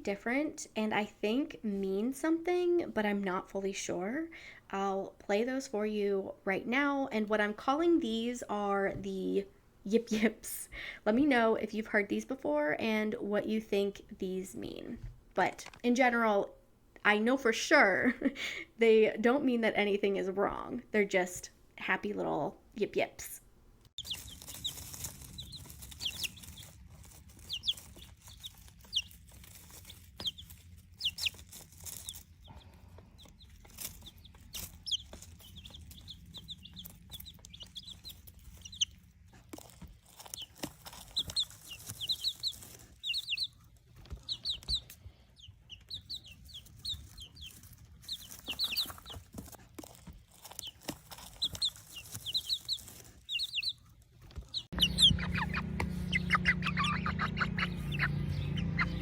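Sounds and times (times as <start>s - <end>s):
chicks cheeping: 24.0s - 59.0s.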